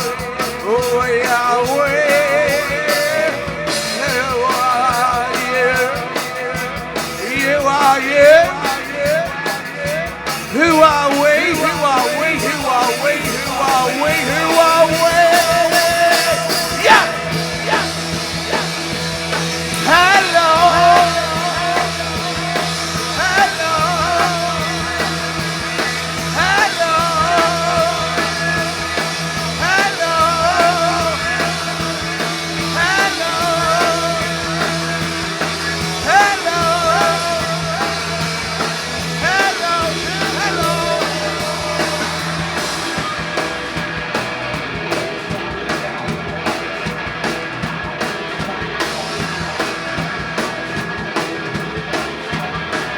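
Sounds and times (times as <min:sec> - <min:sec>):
live rock band playing: 0:00.0 - 0:52.9
swooping lead line: 0:10.5 - 0:52.9
low bass drone: 0:13.2 - 0:39.2.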